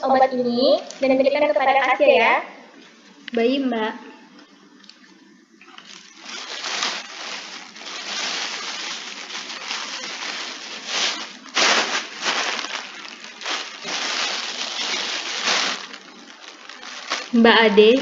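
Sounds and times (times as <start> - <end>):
packaging rustling and crinkling: 5.7 - 18.0.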